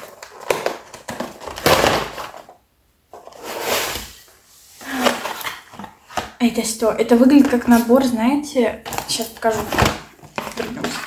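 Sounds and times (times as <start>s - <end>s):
cardboard box scraping and rustling: 3.2s - 5.8s.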